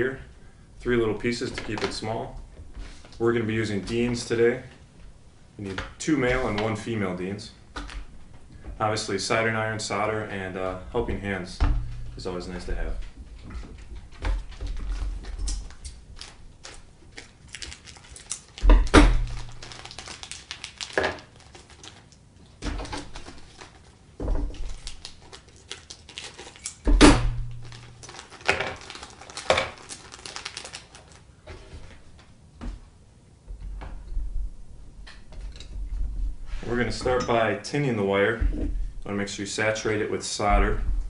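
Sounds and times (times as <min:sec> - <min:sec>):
loud thumps: 0:11.6 - 0:12.2.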